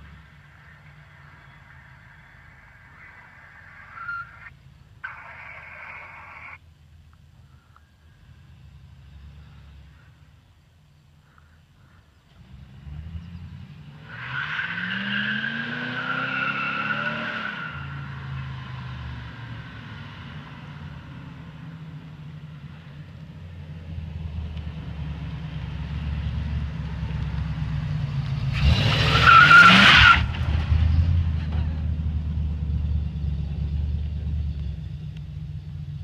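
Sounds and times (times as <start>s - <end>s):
tires squealing: 0.0s - 6.6s, 13.9s - 20.3s, 28.5s - 31.2s
car engine revving: 25.7s - 36.0s.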